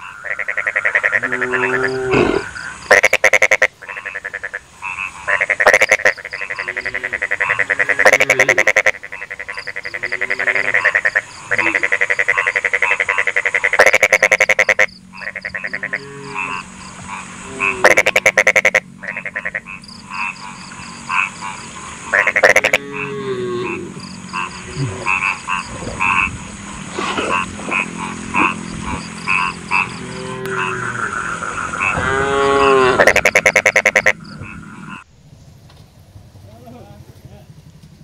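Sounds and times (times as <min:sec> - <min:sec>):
high-pitched frog calls: 0:00.0 - 0:35.1
loud rattling frog croaks: 0:00.0 - 0:35.1.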